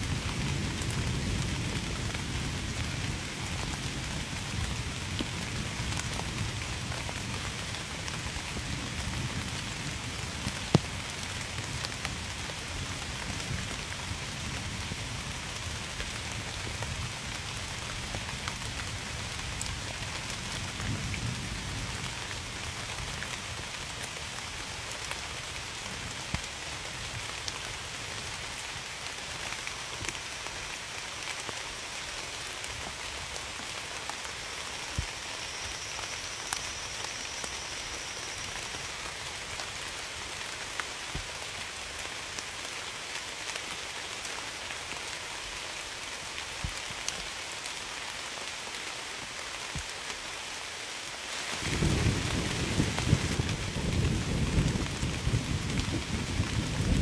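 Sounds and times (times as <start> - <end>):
rain drops on hard surface: 0.0 - 57.0.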